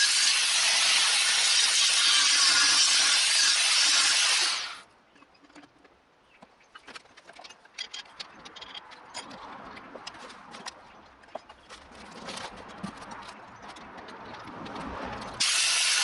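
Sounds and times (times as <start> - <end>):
power tool cutting: 0.0 - 4.8, 15.4 - 16.0.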